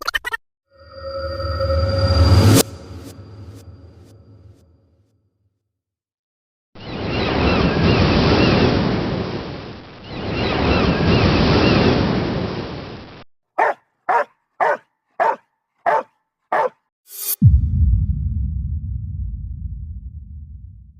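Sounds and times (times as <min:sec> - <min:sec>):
dog barking: 0:13.6 - 0:16.8.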